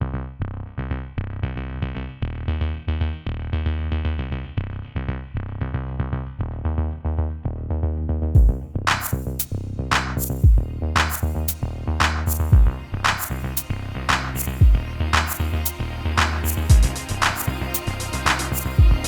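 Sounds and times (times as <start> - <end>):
drum machine beat: 8.4 - 13.4, 14.1 - 15.5, 16.2 - 19.0
electronic music: 8.4 - 19.0.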